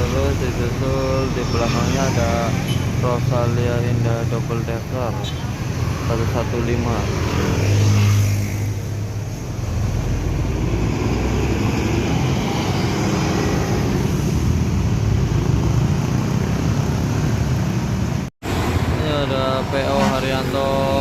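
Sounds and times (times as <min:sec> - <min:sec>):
diesel coach engine: 0:00.0 - 0:07.2, 0:08.4 - 0:21.0
road noise: 0:00.0 - 0:21.0.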